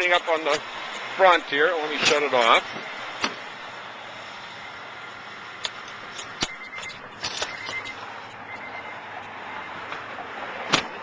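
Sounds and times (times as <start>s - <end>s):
faint high beeping: 6.5s - 9.8s.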